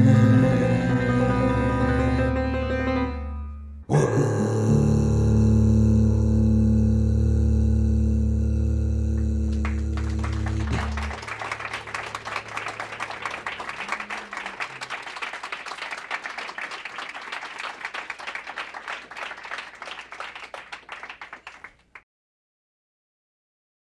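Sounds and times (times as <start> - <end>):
audience applauding: 9.2 - 22.0.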